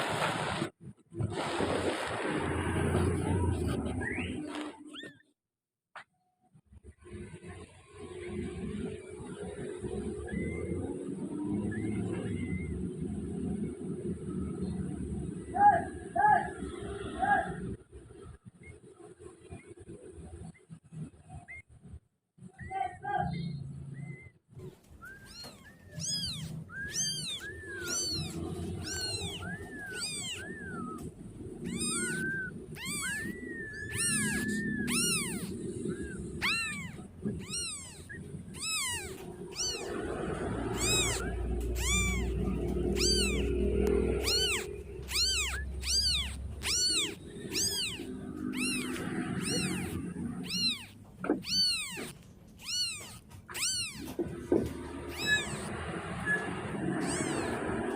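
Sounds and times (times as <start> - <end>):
kitten meowing: 25.0 - 57.9.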